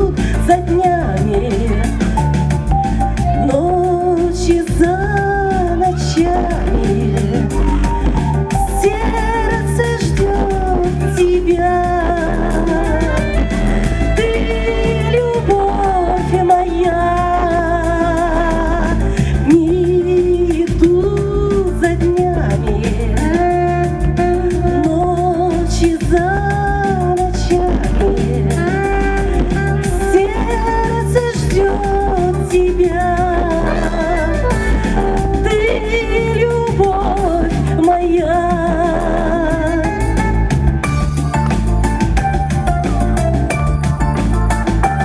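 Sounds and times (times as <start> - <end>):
woman singing pop song: 0.0 - 41.0
backing track with bass beat: 0.0 - 45.0.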